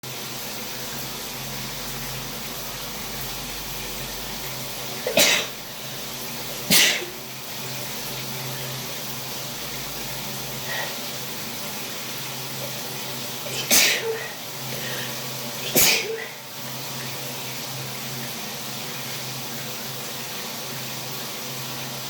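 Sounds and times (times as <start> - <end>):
shower running: 0.0 - 22.0
person sneezing: 5.1 - 5.6, 6.7 - 7.2, 13.5 - 14.4, 15.6 - 16.4.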